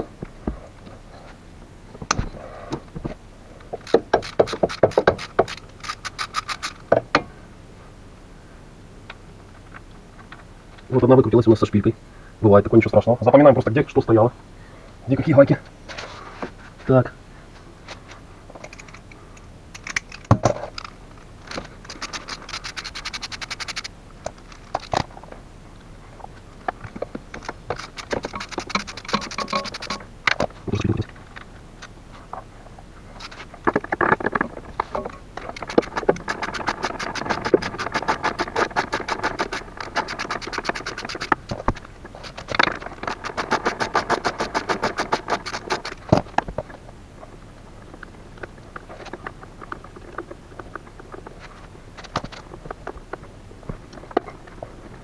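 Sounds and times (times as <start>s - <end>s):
ratchet wrench clicking: 3.8s - 6.8s, 21.5s - 23.9s, 27.3s - 30.0s, 35.4s - 41.6s, 42.2s - 46.1s.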